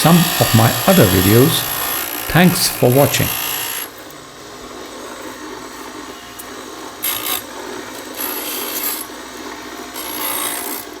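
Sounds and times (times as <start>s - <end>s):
glass grinder rasping: 0.0s - 3.9s, 6.2s - 11.0s.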